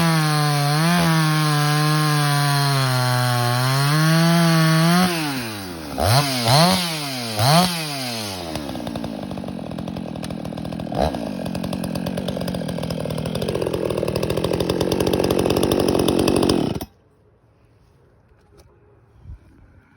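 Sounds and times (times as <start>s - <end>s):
chainsaw revving and idling: 0.0s - 16.9s.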